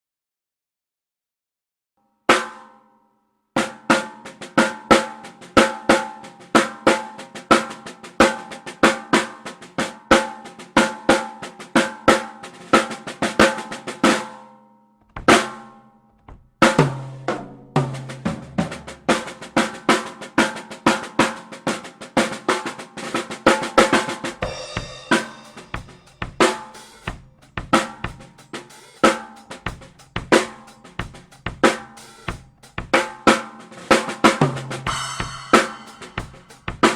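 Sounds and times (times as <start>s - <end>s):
snare drum strokes: 22.2s - 32.4s, 33.9s - 36.9s
lower drum ringing: 24.3s - 28.4s.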